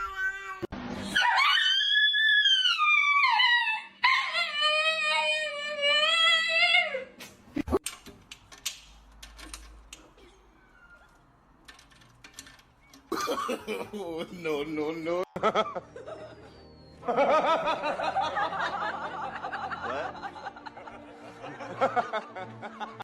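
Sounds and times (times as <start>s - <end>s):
dog howling: 1.1s - 7.0s.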